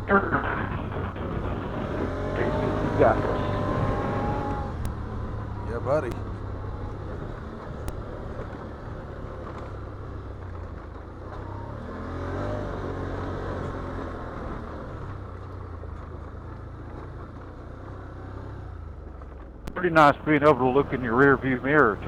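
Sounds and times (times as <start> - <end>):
atv engine revving: 0.0 - 18.8, 19.7 - 22.0.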